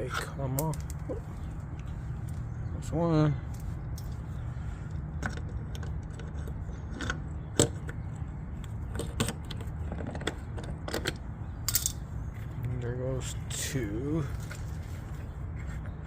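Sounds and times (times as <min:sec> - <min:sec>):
steady low hum: 0:00.0 - 0:16.0
metal tools clinking: 0:11.0 - 0:12.0.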